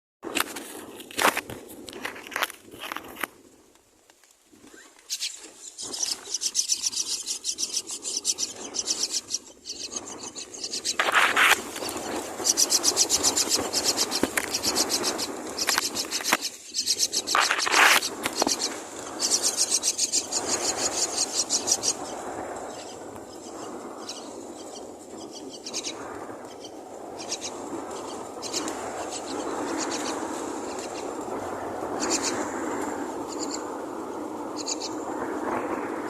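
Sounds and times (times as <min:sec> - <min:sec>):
nestlings raspy begging calls: 0:05.1 - 0:22.1, 0:22.7 - 0:31.1, 0:32.0 - 0:32.5.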